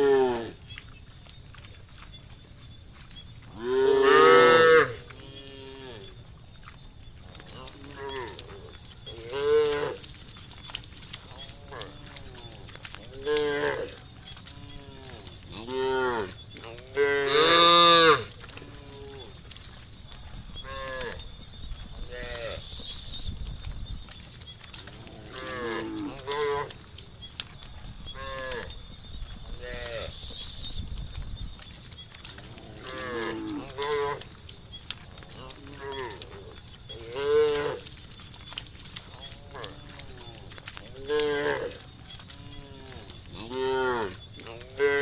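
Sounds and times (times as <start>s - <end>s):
cows mooing: 0.0s - 0.6s, 3.5s - 6.2s, 7.4s - 10.1s, 11.2s - 19.4s, 20.6s - 21.2s, 24.7s - 26.8s, 28.1s - 28.7s, 32.4s - 34.3s, 35.4s - 37.9s, 39.1s - 45.0s.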